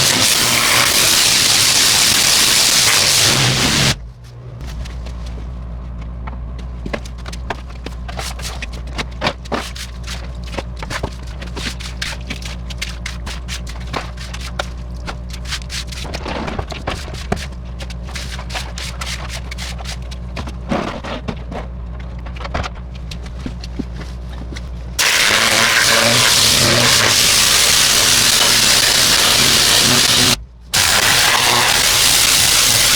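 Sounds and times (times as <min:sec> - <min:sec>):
pressure washer running: 0:00.0 - 0:04.0, 0:25.0 - 0:32.9
pressure washer spray hissing: 0:00.0 - 0:04.0, 0:25.0 - 0:32.9
clicks and scrapes: 0:06.4 - 0:32.9.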